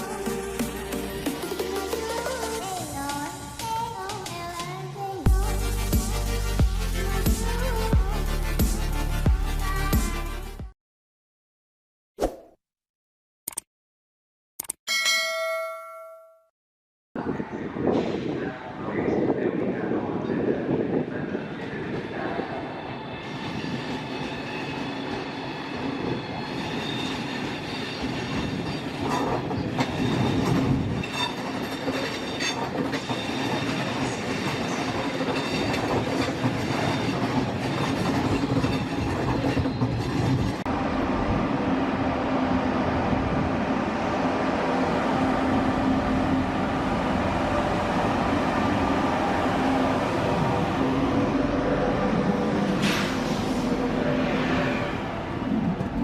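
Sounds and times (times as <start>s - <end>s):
passenger train rumbling: 17.2s - 56.0s.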